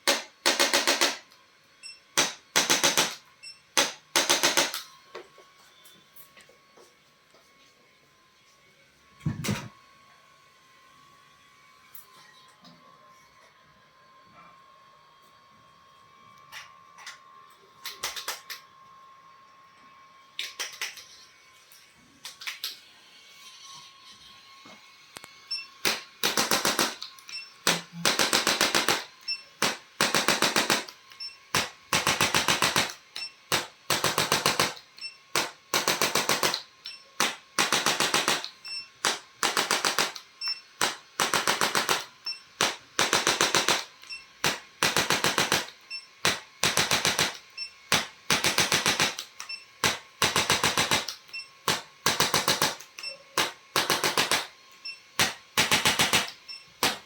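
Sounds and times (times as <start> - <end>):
rapid mechanical clicking: 55.2 - 57.0.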